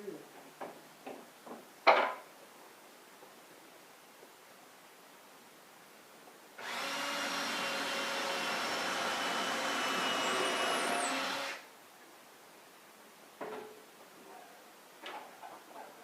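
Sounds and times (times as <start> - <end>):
power tool motor running: 6.6 - 11.6.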